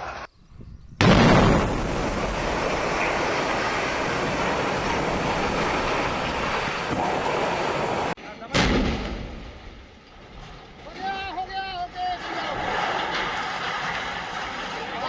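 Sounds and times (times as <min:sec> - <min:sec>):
loud explosive blast: 0:01.0 - 0:10.6
building collapsing rumble: 0:01.0 - 0:15.0.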